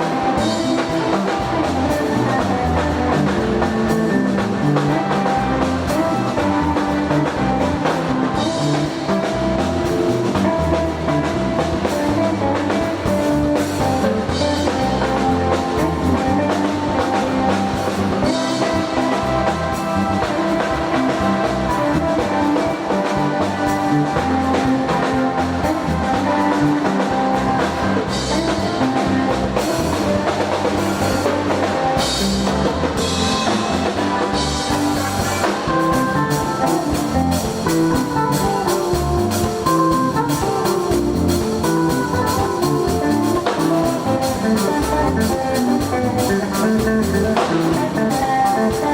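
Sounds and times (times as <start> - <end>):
instrumental gospel band music: 0.0 - 48.9.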